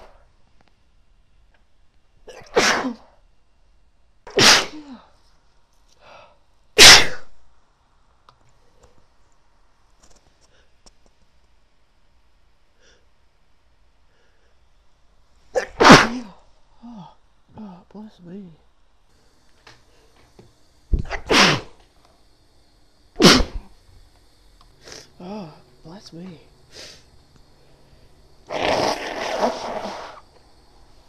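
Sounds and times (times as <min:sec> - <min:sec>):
woman sneezing: 0:02.3 - 0:03.1, 0:04.3 - 0:05.1, 0:06.8 - 0:07.3, 0:15.6 - 0:16.4, 0:21.0 - 0:21.7, 0:23.2 - 0:23.7.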